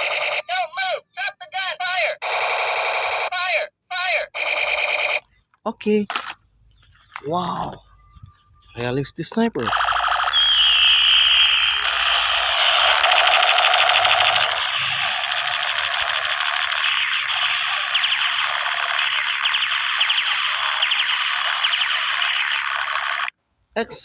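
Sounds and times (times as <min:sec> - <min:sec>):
toy gun rapid-fire buzz: 0:04.4 - 0:05.2, 0:09.7 - 0:23.3
short high falling whine: 0:09.7 - 0:21.8.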